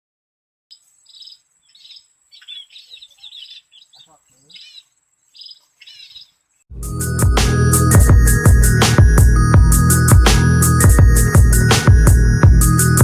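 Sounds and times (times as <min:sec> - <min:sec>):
songbirds chirping: 0:00.7 - 0:06.7.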